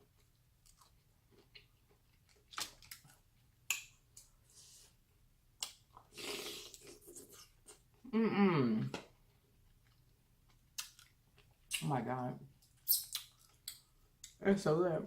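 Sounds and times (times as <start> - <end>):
person chewing wetly: 0.2 - 4.3, 9.2 - 11.9, 12.6 - 14.4
person humming mmm: 8.1 - 8.9.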